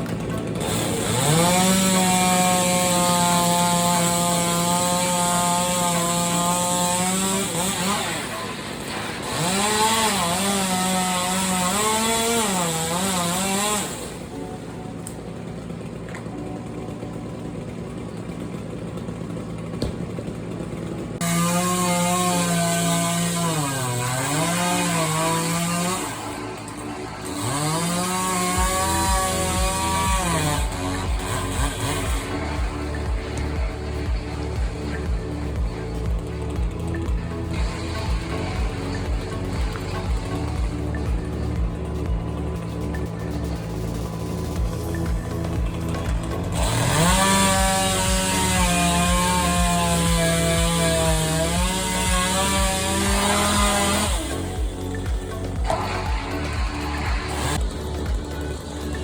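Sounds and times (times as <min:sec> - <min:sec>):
chainsaw revving: 0:00.0 - 0:59.0
low music thumps: 0:21.2 - 0:59.0.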